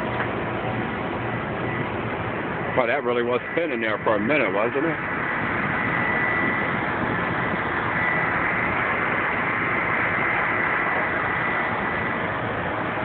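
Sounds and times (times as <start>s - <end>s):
thunderstorm rushing noise: 5.0s - 13.0s.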